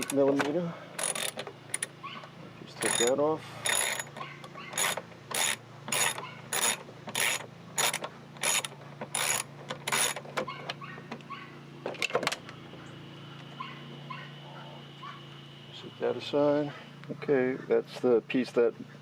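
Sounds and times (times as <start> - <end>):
ratchet wrench clicking: 1.0 - 1.9, 2.8 - 4.2, 4.8 - 10.2.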